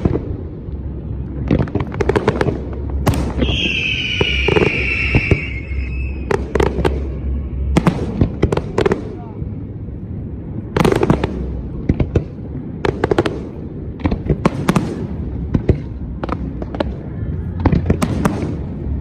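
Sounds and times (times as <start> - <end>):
fireworks bangs and crackles: 0.0 - 19.0
firework whistle: 3.2 - 8.2.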